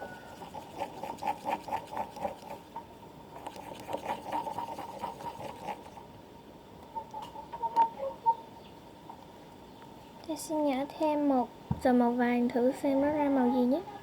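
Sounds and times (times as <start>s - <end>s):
brush stirring sticky glue: 0.2s - 2.7s, 3.4s - 6.0s.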